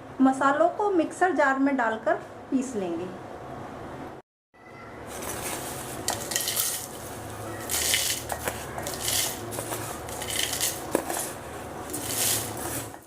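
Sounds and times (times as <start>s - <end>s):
hard seeds rattling into jar: 5.2s - 13.0s
seeds clicking against plate: 7.6s - 13.0s.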